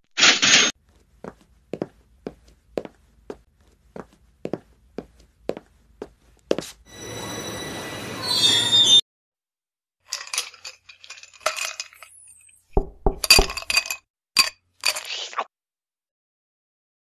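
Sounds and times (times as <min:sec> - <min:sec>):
glass or metal clinks and clatters: 0:10.1 - 0:15.1.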